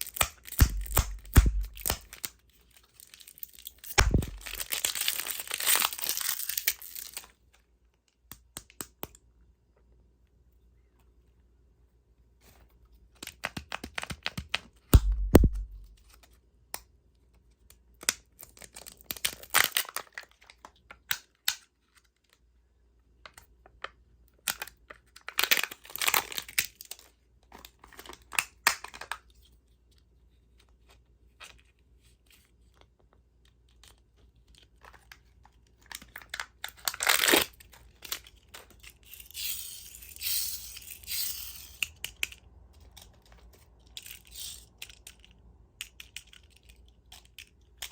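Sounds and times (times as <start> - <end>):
candy wrappers crinkling: 0.0 - 7.4, 18.4 - 20.8, 24.4 - 29.3, 33.5 - 47.9
dull thump: 0.6 - 1.9, 4.0 - 4.5, 15.0 - 16.0.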